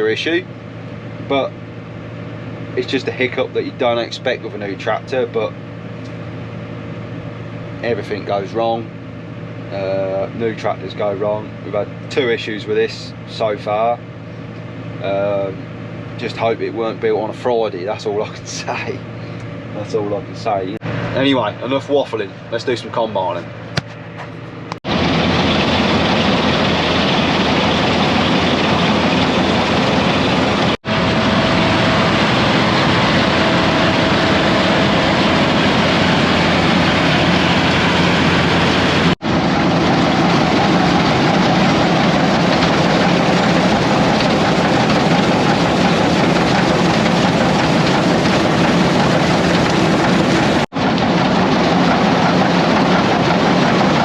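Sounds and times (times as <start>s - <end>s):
combine harvester drone: 0.0s - 54.0s.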